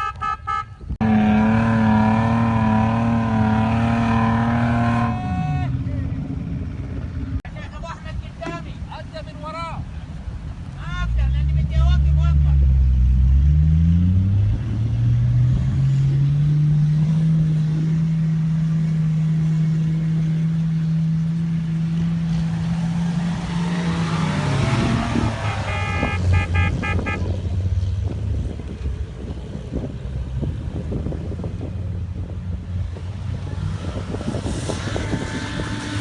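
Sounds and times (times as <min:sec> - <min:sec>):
car horn short toots: 0:00.0 - 0:00.8, 0:25.4 - 0:27.4
vehicle engine revving: 0:01.0 - 0:07.4, 0:11.1 - 0:36.0.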